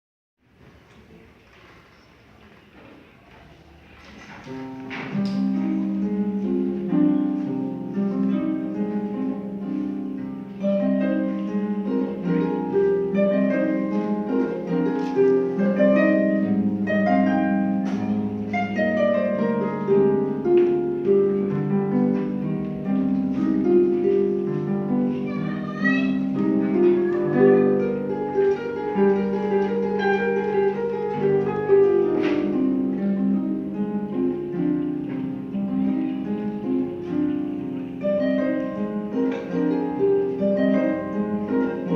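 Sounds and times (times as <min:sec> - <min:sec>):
harp playing classical piece: 0:04.4 - 0:41.9.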